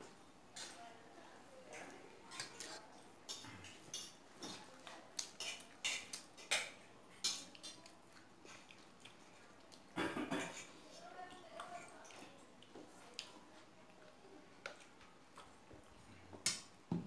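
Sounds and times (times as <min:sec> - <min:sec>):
cutlery clicking on a plate: 0:03.3 - 0:04.6, 0:05.2 - 0:07.8.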